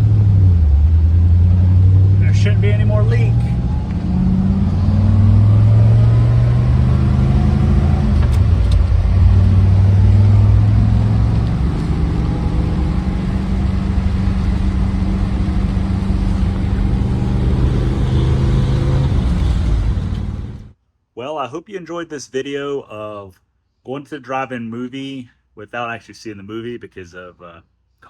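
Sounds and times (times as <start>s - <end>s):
car engine running: 0.0s - 20.8s.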